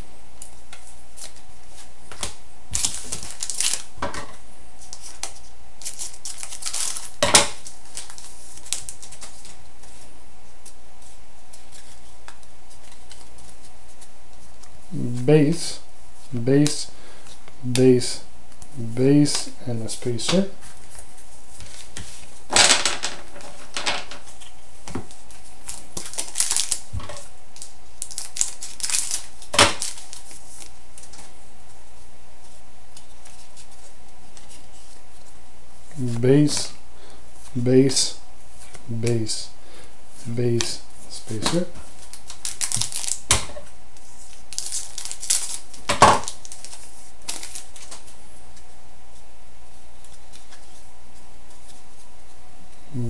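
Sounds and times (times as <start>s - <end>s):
cards rustling and clicking: 0.4s - 3.9s, 4.8s - 14.7s, 18.5s - 31.3s, 40.2s - 48.7s.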